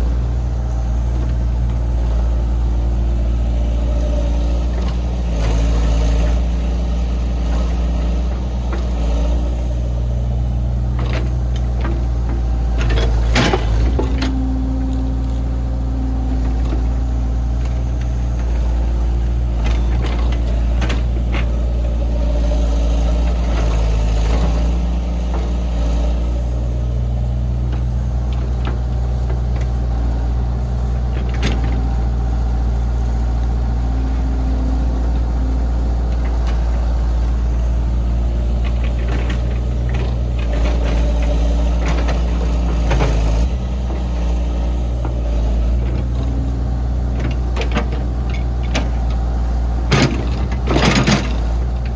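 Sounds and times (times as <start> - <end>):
diesel engine running: 0.0 - 51.9
machinery knocks and clanks: 10.7 - 51.9.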